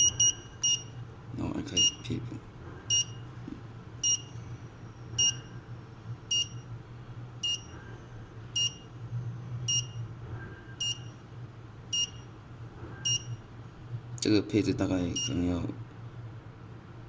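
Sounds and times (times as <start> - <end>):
steady low hum: 0.0 - 17.0
short high buzzer beeps: 13.1 - 13.3.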